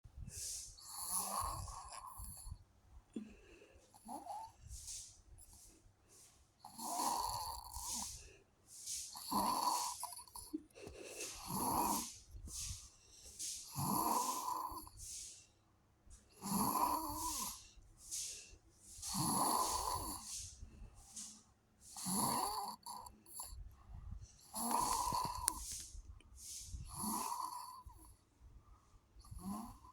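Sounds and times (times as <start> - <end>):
soft breathy exhales: 0.2 - 2.6, 3.2 - 15.6, 16.3 - 22.1, 23.3 - 29.9
person snoring: 0.8 - 2.5, 6.6 - 8.2, 9.2 - 10.5, 11.2 - 12.2, 13.7 - 15.0, 16.4 - 17.6, 19.1 - 20.3, 22.0 - 23.6, 24.5 - 25.8, 26.9 - 28.1, 29.3 - 29.9.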